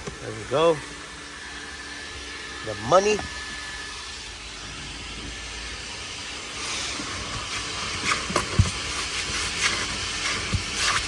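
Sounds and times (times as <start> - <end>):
vacuum rush of air: 3.8 - 10.5.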